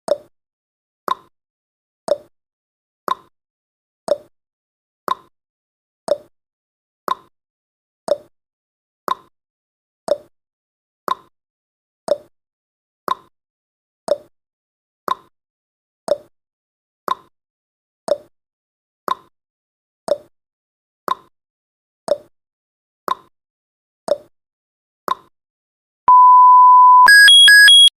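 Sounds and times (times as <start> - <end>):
electronic alarm alternating tones: 26.1 - 27.9
steady timer beep: 26.1 - 27.9.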